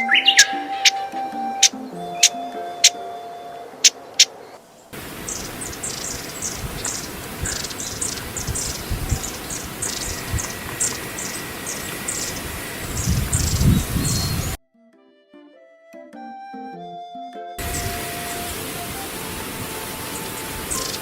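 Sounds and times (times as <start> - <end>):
sharp loud bird calls: 0.0 - 3.0, 3.8 - 14.6, 17.6 - 21.0
songbirds high thin calls: 0.0 - 3.0, 3.8 - 14.6, 17.6 - 21.0
outdoor hiss: 3.8 - 14.6, 17.6 - 21.0.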